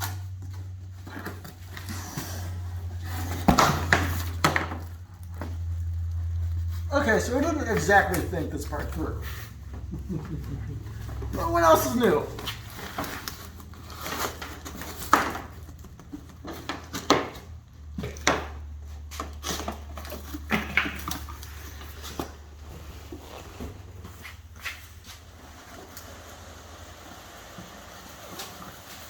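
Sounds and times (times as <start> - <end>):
steady low hum: 0.1 - 14.5.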